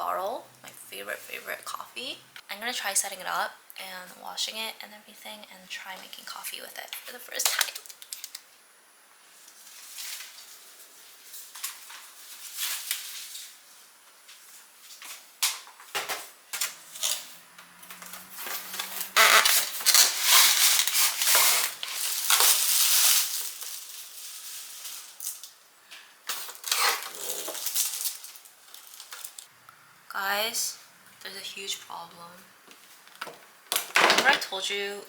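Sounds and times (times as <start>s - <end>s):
packaging rustling: 18.0s - 25.6s, 26.3s - 29.5s.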